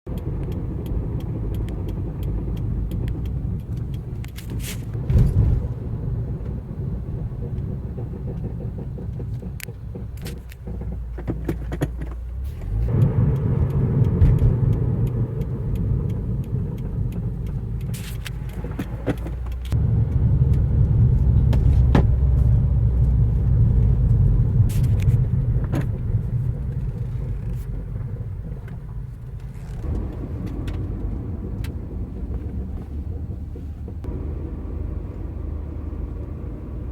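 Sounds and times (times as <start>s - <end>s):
car engine rumble: 0.0s - 36.9s
short brake clicks: 0.1s - 5.0s, 8.3s - 21.5s.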